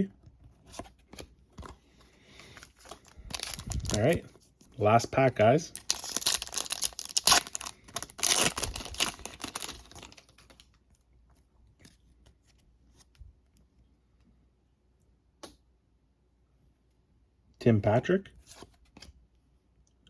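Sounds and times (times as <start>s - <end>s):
wrapper tearing and crinkling: 2.7s - 4.2s, 5.7s - 10.6s.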